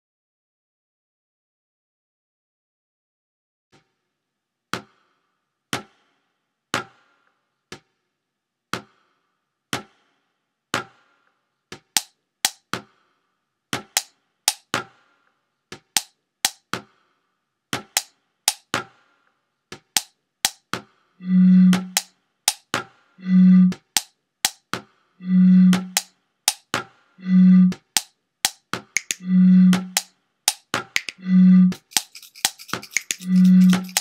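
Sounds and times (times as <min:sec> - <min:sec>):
sharp percussive clicks: 0:28.0 - 0:34.0.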